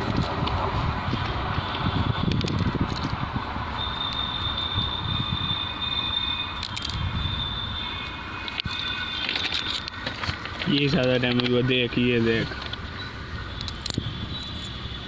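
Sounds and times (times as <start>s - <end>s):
coins clinking: 6.6s - 7.0s.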